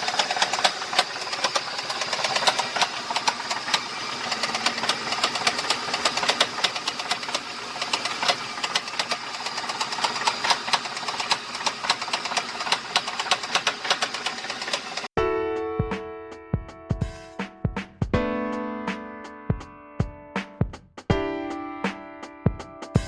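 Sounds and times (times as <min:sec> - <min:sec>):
engine knocking: 0:00.0 - 0:15.1.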